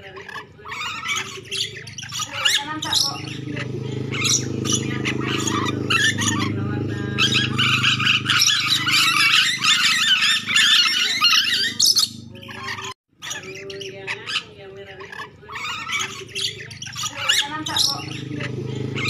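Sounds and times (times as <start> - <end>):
parrots squawking: 0.0 - 19.0
steady low hum: 2.8 - 12.9.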